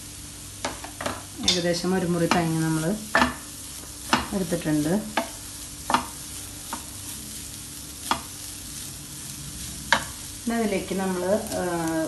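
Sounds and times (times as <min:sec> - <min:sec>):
spatula stirring in hot pan: 0:00.6 - 0:11.7
spatula tapping pan: 0:02.2 - 0:04.4, 0:05.1 - 0:06.9, 0:08.0 - 0:08.4.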